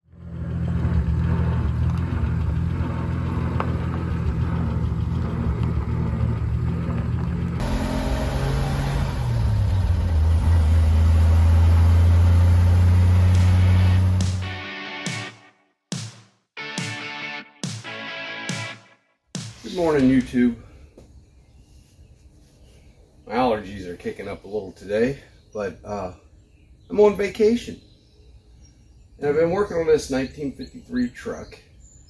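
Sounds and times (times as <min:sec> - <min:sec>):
vehicle engine droning: 0:00.0 - 0:14.6.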